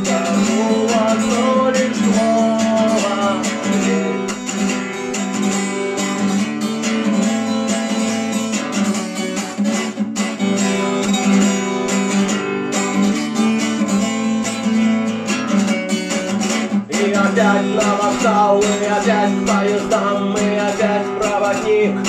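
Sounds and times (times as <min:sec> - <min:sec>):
acoustic guitar strumming: 0:00.0 - 0:22.0.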